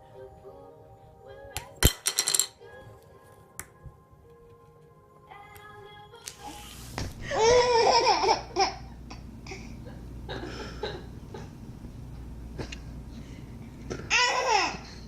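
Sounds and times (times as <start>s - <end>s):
small child giggling: 7.3s - 11.5s, 14.1s - 15.0s.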